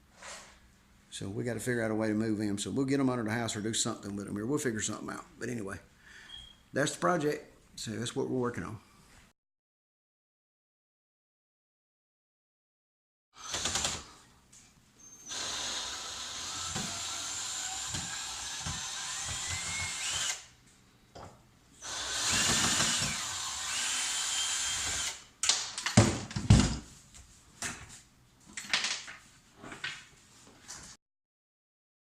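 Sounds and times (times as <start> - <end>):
power drill running: 13.4 - 14.1, 15.3 - 20.5, 21.8 - 25.2.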